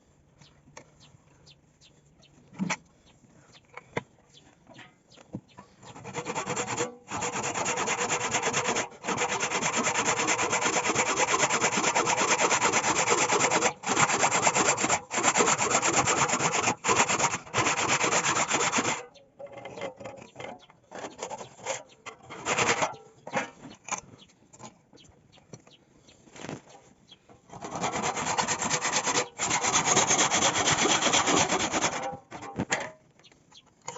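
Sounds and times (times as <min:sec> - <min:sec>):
wood sanding by hand: 0:05.9 - 0:19.0, 0:22.4 - 0:22.9, 0:27.5 - 0:32.2.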